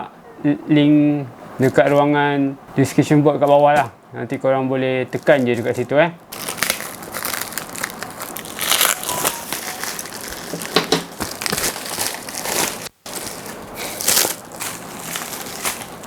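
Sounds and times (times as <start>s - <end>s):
plastic packaging crinkling: 5.0s - 16.0s.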